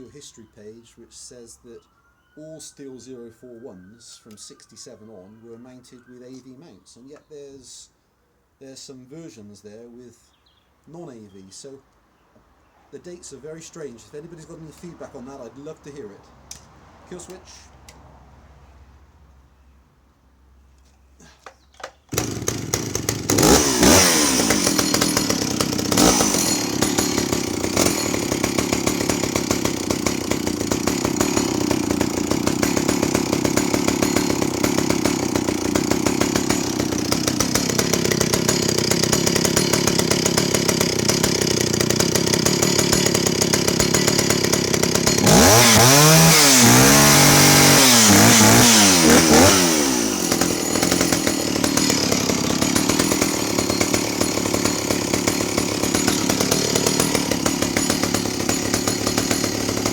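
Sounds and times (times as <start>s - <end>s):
chainsaw idling and revving: 13.6s - 17.4s, 21.3s - 59.9s.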